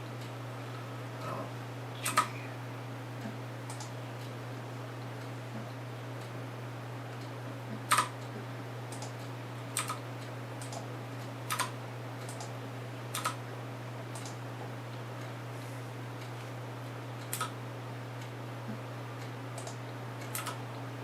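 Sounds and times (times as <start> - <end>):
computer mouse clicks: 3.7 - 4.3, 7.9 - 8.2, 8.9 - 9.2, 9.8 - 10.0, 10.6 - 10.8, 11.5 - 12.5, 13.1 - 13.4, 14.1 - 14.4, 17.2 - 17.6, 19.2 - 20.6.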